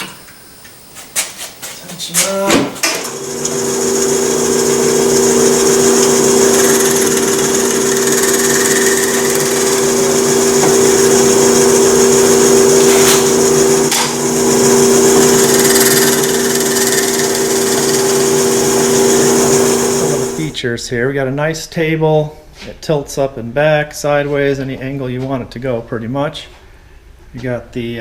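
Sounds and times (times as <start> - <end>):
drill press motor humming: 2.8 - 20.6.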